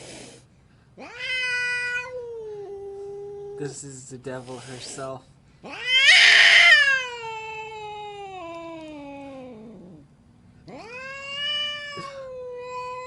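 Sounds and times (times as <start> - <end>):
angry cat yowling: 1.0 - 3.8, 5.6 - 10.1, 10.7 - 13.0.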